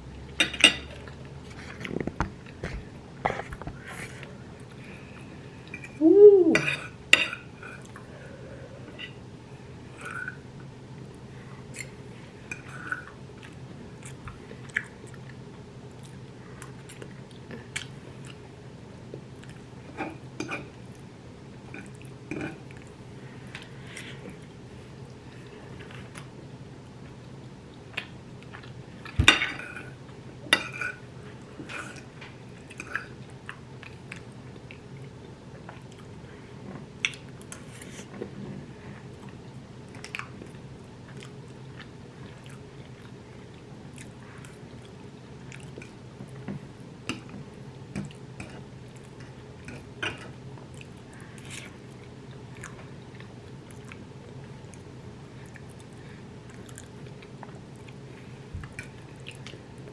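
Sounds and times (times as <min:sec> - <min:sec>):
person chewing food: 0:11.0 - 0:18.5, 0:27.0 - 0:59.9.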